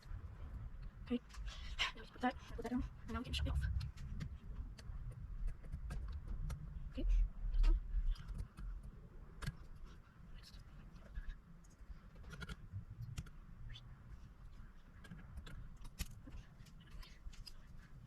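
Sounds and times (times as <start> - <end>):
low rumble: 0.0 - 8.4.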